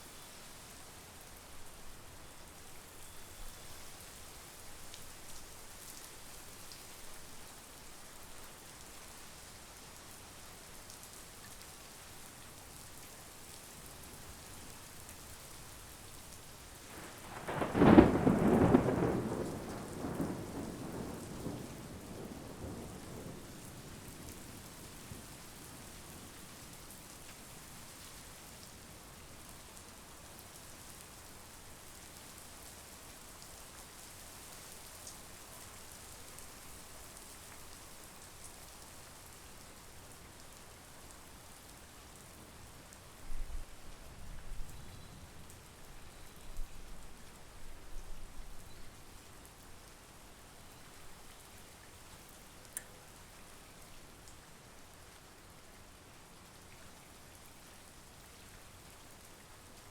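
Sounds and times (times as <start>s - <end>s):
steady rain falling: 0.0s - 59.9s
thunder rumbling: 17.0s - 23.4s.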